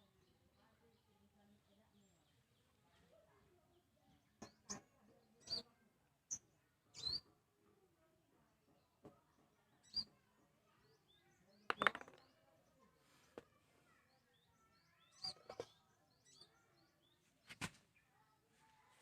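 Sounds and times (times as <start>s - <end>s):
faint bird chirps: 0.0s - 7.5s, 9.6s - 19.0s
small parts clicking and knocking: 11.7s - 12.4s.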